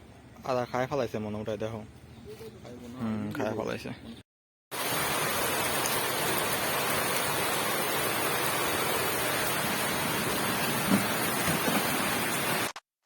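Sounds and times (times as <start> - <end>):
steady rain falling: 4.7 - 12.7.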